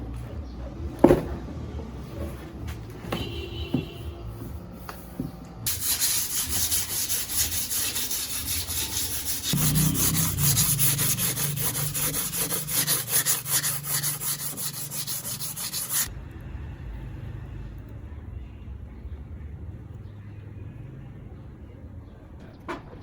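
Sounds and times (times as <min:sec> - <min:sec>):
sanding strokes: 0:05.7 - 0:16.1.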